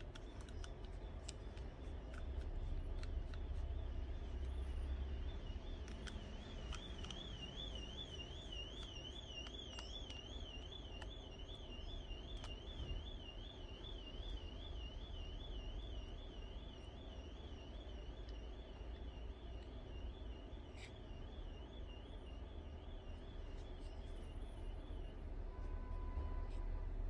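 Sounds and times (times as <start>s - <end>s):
faint clicks: 0.0s - 4.7s, 5.3s - 11.6s.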